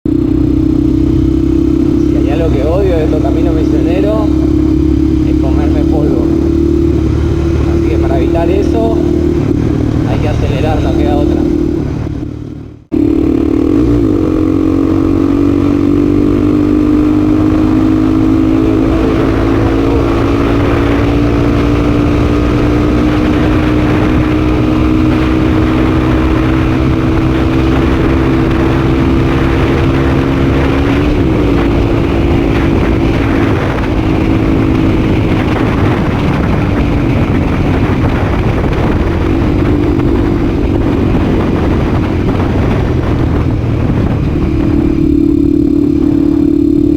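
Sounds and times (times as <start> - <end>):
motorcycle engine revving high: 0.1 - 46.9.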